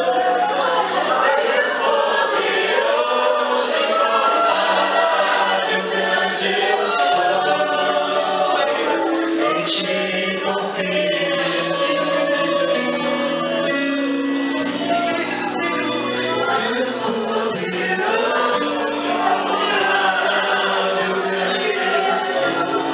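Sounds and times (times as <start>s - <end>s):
choir singing gospel song: 0.0s - 22.9s
sustained instrumental chords: 0.6s - 22.9s.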